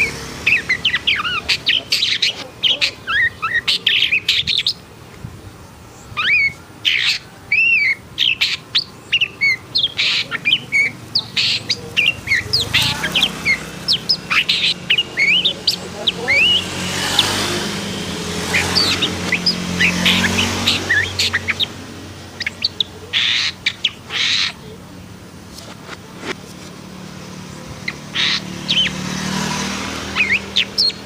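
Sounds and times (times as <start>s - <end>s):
shrike singing sharp chirps: 6.2s - 24.8s, 27.2s - 31.0s.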